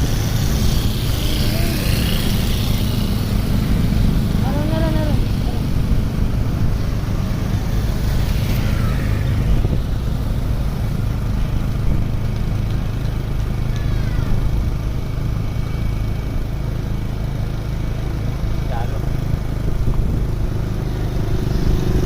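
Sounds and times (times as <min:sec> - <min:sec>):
vehicle engine running: 0:00.0 - 0:22.0.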